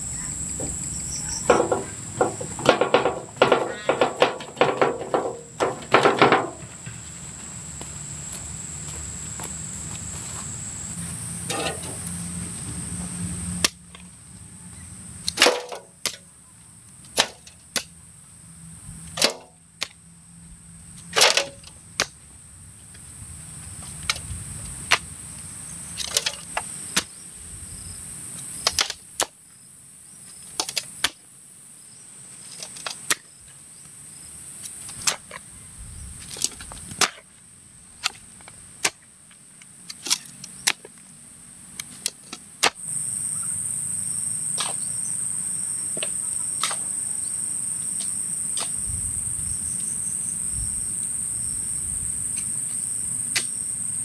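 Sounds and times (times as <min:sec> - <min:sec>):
high-pitched insect chorus: 0:00.0 - 0:54.0
sharp knocks: 0:01.5 - 0:07.0.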